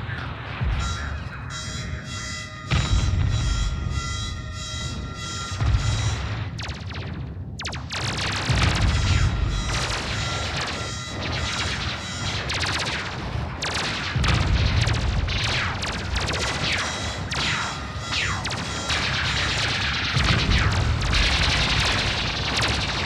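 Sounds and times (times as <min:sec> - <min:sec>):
booming explosions: 0:00.0 - 0:23.0
laser gun shots: 0:05.4 - 0:23.0.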